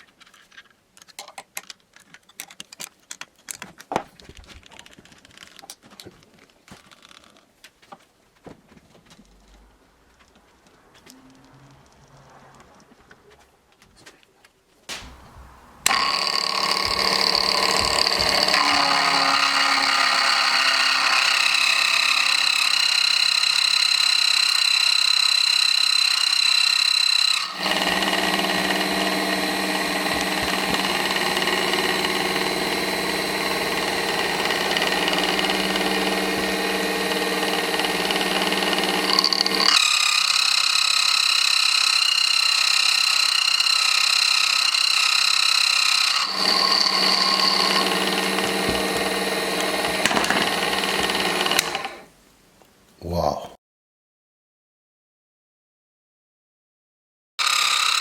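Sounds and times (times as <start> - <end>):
milling machine whine: 14.9 - 40.2, 41.2 - 52.1.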